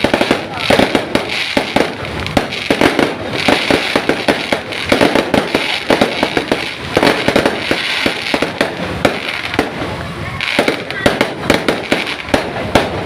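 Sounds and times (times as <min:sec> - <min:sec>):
fireworks popping and banging: 0:00.0 - 0:13.0.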